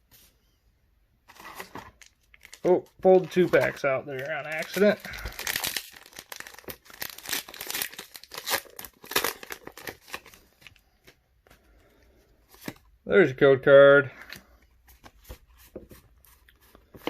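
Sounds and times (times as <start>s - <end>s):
foil wrapper crinkling and tearing: 1.3s - 10.8s.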